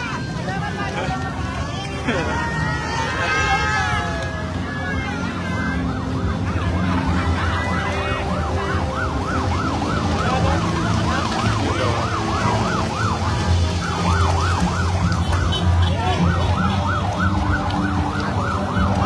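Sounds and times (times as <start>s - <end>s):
low traffic hum: 0.0s - 19.0s
electronic siren yelping: 5.5s - 19.0s.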